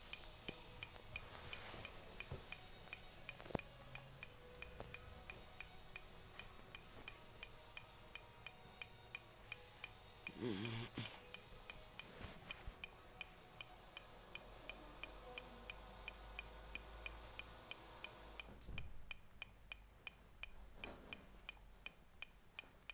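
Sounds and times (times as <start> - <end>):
hazard-light flasher ticking: 11.0 - 22.9.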